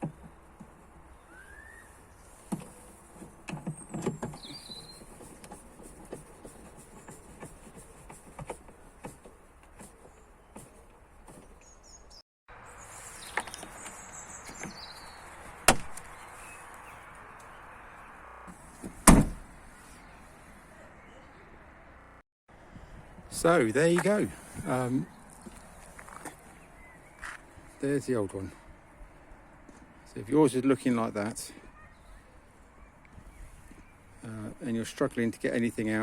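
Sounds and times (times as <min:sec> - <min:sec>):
bird chirps: 0:01.1 - 0:02.3, 0:03.7 - 0:05.3, 0:11.4 - 0:18.4, 0:31.7 - 0:34.2.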